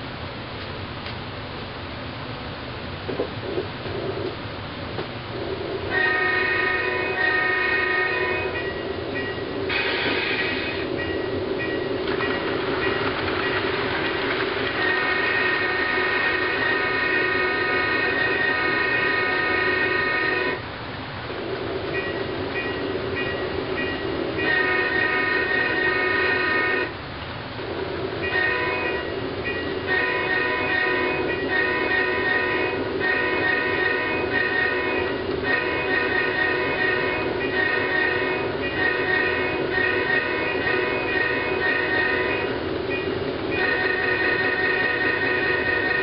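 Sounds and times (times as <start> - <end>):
steady drone: 5.3 - 46.0
model train chime horn: 5.9 - 13.6, 14.6 - 20.6, 22.0 - 26.9, 28.2 - 46.0.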